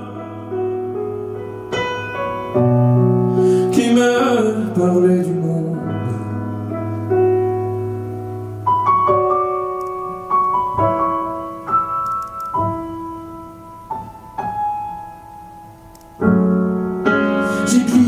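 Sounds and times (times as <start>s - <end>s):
slow gentle piano: 0.0s - 18.0s.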